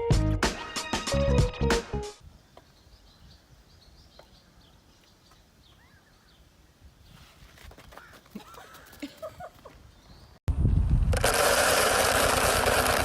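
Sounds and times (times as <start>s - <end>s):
music: 0.0s - 2.2s
faint outdoor ambience: 2.2s - 10.4s
high bird chirps: 2.6s - 6.4s.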